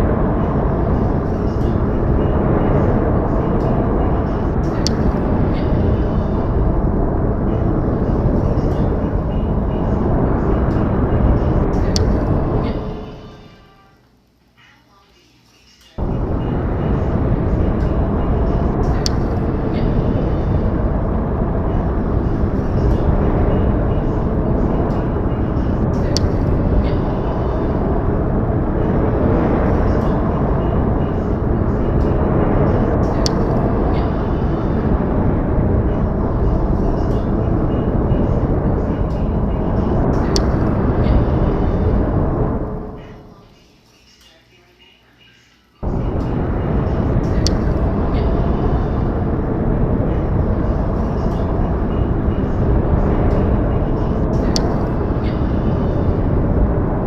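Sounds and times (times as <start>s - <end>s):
low rushing noise: 0.0s - 13.9s, 16.0s - 44.0s, 45.8s - 57.0s
faint clicks: 4.6s - 5.7s, 11.8s - 12.8s, 18.8s - 19.4s, 33.0s - 34.1s, 40.2s - 41.2s, 47.2s - 48.3s, 54.4s - 55.4s.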